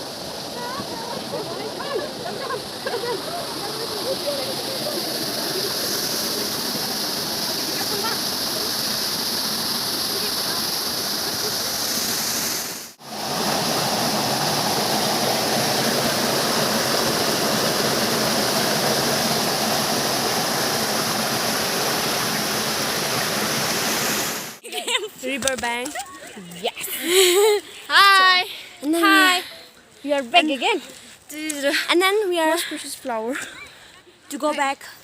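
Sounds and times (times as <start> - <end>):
waterfall roaring: 0.0 - 24.6.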